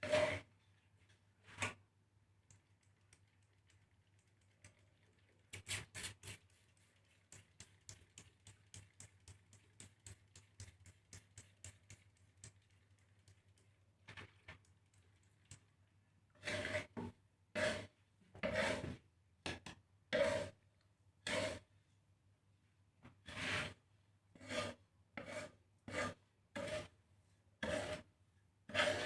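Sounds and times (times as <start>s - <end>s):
seeds ticking in a roasting pan: 7.0s - 13.8s.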